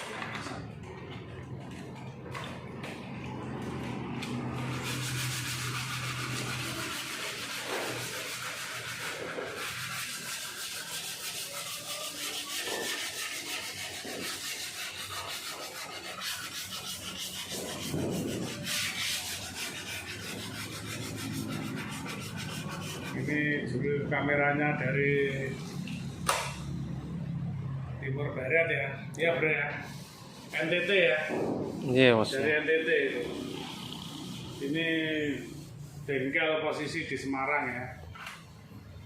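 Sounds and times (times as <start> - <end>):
sandpaper rubbing on car panel: 4.3 - 23.5, 29.8 - 36.6.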